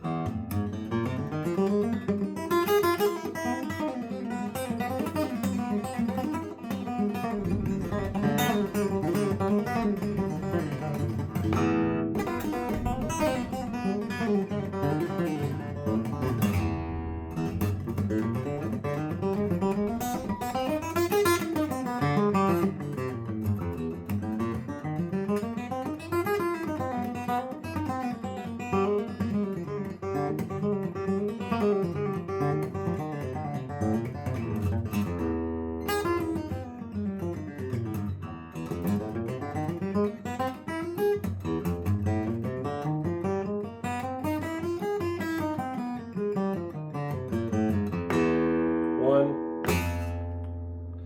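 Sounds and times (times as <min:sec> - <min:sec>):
guitar playing quick scale runs: 0:04.8 - 0:23.1.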